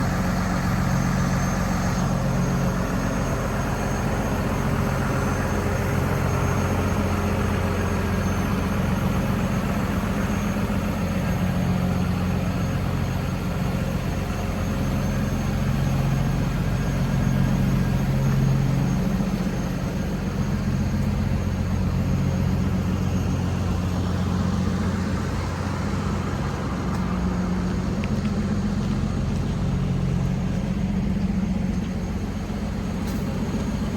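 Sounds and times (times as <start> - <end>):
lorry diesel engine idling: 0.0 - 33.9.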